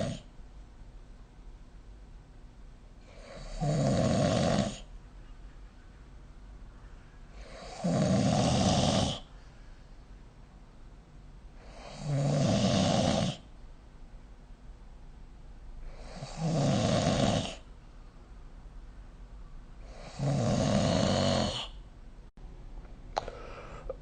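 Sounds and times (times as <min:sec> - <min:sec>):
person snoring: 0:00.0 - 0:00.3, 0:03.0 - 0:04.9, 0:07.4 - 0:09.3, 0:11.6 - 0:13.5, 0:15.9 - 0:17.6, 0:19.9 - 0:21.8.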